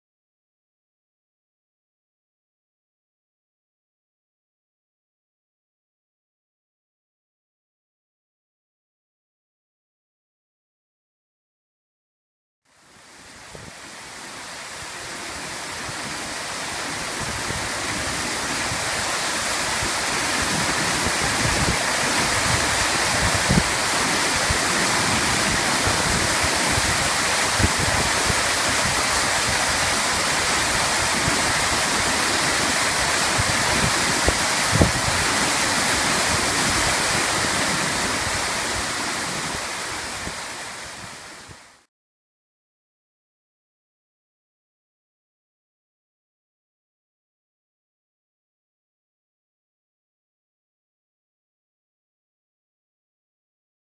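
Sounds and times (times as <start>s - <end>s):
floodwater gushing from pump: 13.1s - 41.7s.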